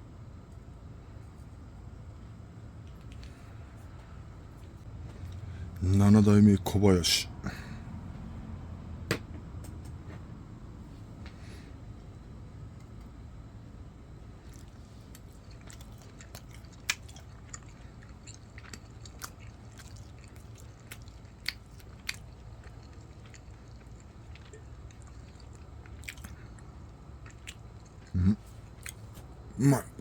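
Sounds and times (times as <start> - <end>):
low steady hum: 0.0 - 30.0
person chewing food: 14.4 - 30.0.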